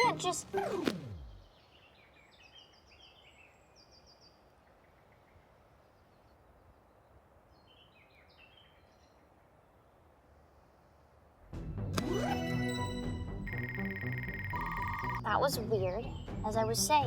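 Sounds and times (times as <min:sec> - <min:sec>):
outdoor background hiss: 0:00.1 - 0:11.8
soft bird chirps: 0:01.4 - 0:11.0.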